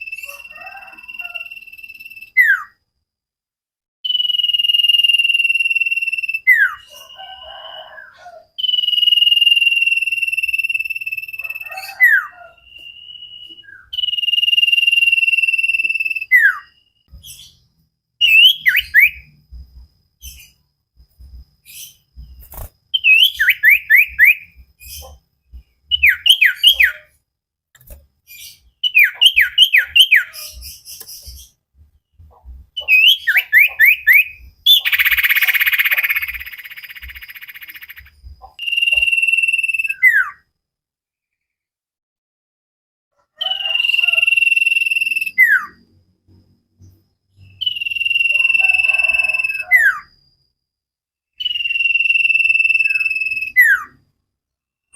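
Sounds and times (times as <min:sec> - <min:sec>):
bird whistling song: 0:00.0 - 0:02.8, 0:04.0 - 0:19.4, 0:20.2 - 0:20.7, 0:21.6 - 0:25.2, 0:25.8 - 0:27.2, 0:28.3 - 0:31.6, 0:32.7 - 0:40.4, 0:43.4 - 0:45.8, 0:46.8 - 0:50.4, 0:51.4 - 0:54.0
harsh rasping bird call: 0:47.6 - 0:50.1.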